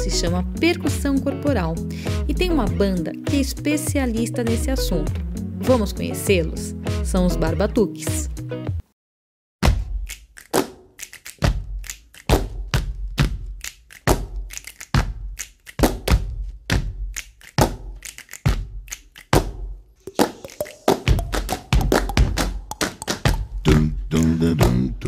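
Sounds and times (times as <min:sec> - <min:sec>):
hand claps and taps: 0:10.0 - 0:19.6, 0:20.2 - 0:23.5
deep body slaps: 0:11.4 - 0:13.5, 0:14.1 - 0:18.8.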